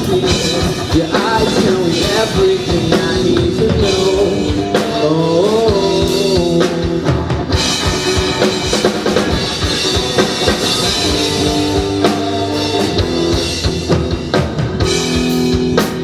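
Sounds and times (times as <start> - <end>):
live rock band playing: 0.0 - 16.0.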